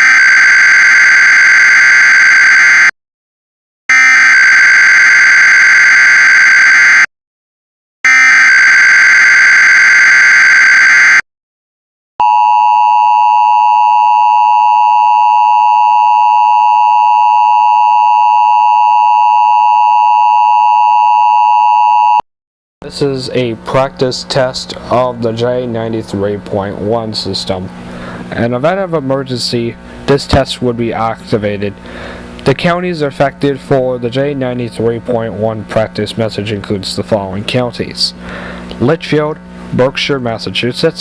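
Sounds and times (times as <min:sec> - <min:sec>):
two-tone attention signal: 0:12.2 - 0:22.2.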